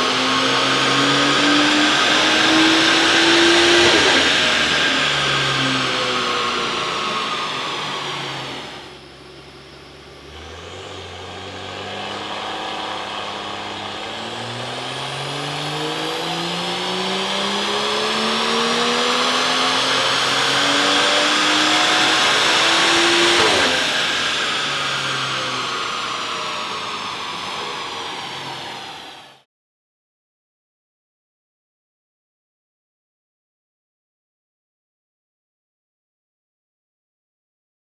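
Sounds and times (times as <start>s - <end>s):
car engine full-throttle pull: 0.0s - 29.4s.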